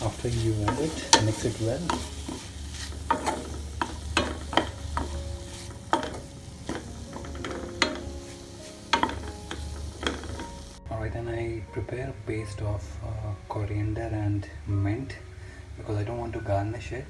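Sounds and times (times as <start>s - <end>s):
utensil knocking against pan: 0.0s - 10.6s
utensil scraping frying pan: 0.0s - 10.8s
food sizzling: 0.0s - 11.0s.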